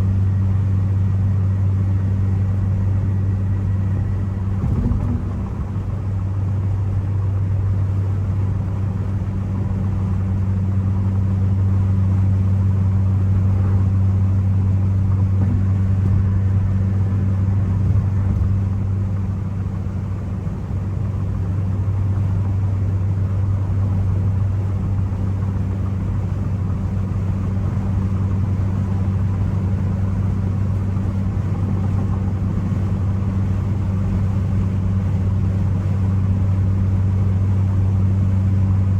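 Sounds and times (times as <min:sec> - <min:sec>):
road noise: 0:00.0 - 0:10.5, 0:13.4 - 0:22.1
car engine droning: 0:00.0 - 0:38.9.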